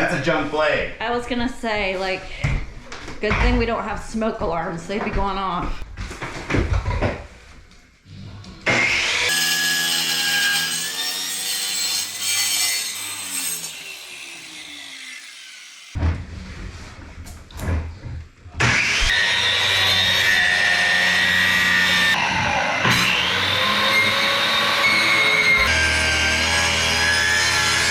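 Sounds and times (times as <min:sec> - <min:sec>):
power saw cutting wood: 0:08.6 - 0:16.0, 0:18.6 - 0:27.9.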